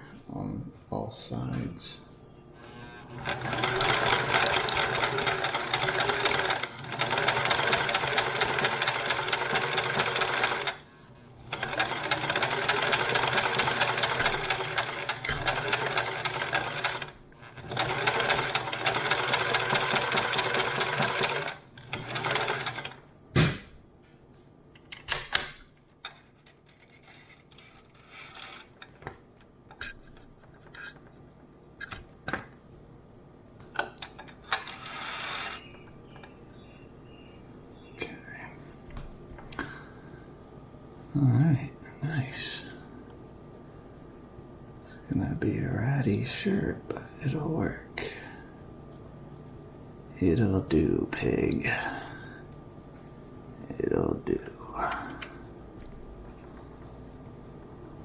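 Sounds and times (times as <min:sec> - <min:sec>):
sewing machine stitching: 0:03.1 - 0:10.8, 0:11.4 - 0:23.0.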